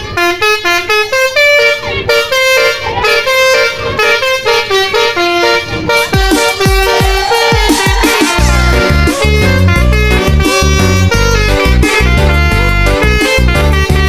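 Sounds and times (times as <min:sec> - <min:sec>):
bus horn playing a tune: 0:00.0 - 0:14.0
electronic music with bass beats: 0:06.2 - 0:14.0.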